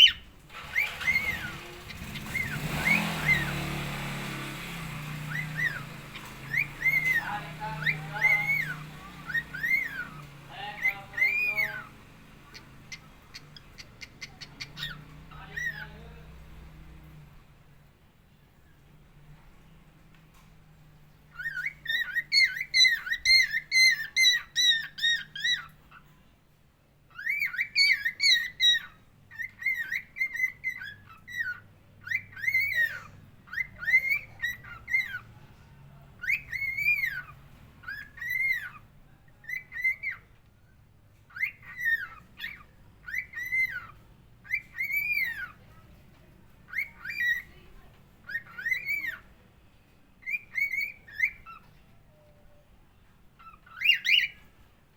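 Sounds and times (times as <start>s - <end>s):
budgerigar whistling: 0.0s - 3.9s, 5.1s - 16.0s, 21.3s - 26.0s, 27.1s - 35.4s, 36.2s - 40.3s, 41.3s - 45.7s, 46.7s - 47.6s, 48.2s - 49.3s, 50.2s - 52.2s, 53.4s - 54.5s.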